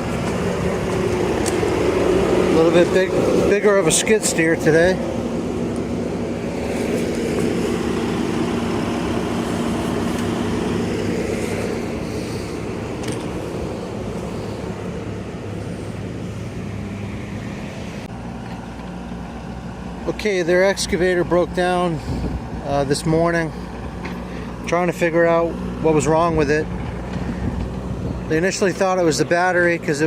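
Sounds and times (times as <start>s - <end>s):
engine humming: 0.0s - 30.0s.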